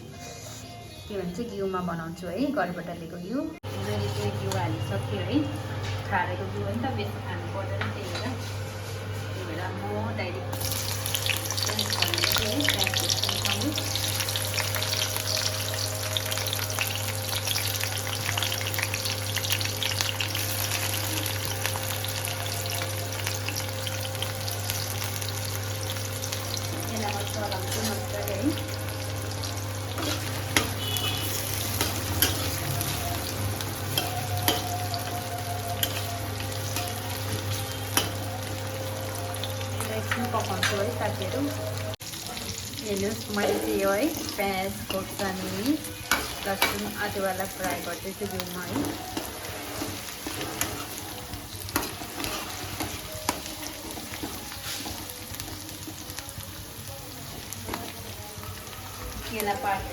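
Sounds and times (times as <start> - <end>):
vegetables sizzling in fat: 3.6 - 59.9.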